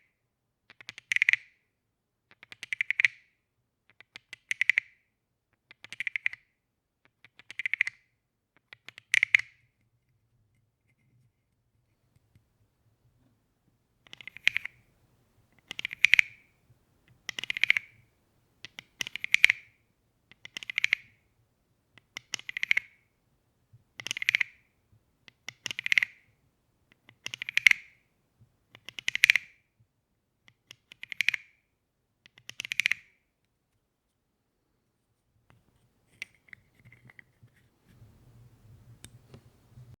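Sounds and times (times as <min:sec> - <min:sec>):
wooden frog toy rasping: 0:14.1 - 0:14.8, 0:15.6 - 0:16.4, 0:17.3 - 0:18.0.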